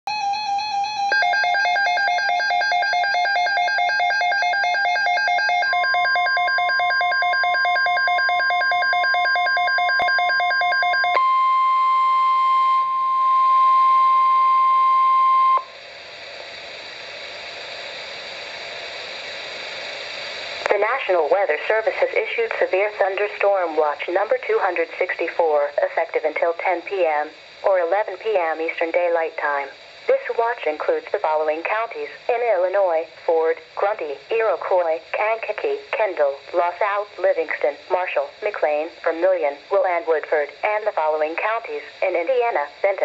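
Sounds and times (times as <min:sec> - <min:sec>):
steady warning alarm tone: 0:00.1 - 0:15.8
faint radio hiss: 0:15.6 - 0:43.0.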